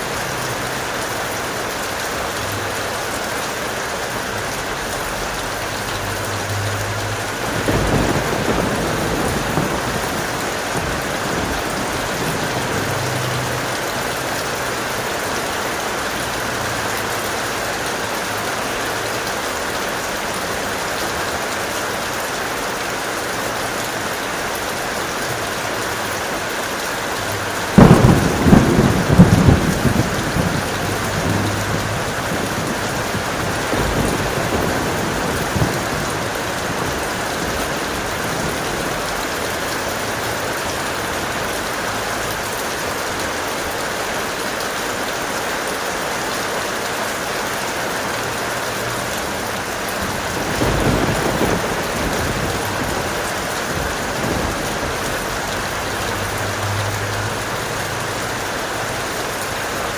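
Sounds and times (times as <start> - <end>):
heavy rain: 0.0 - 59.9
thunder rumbling: 6.9 - 15.2, 27.6 - 42.0, 49.2 - 57.6.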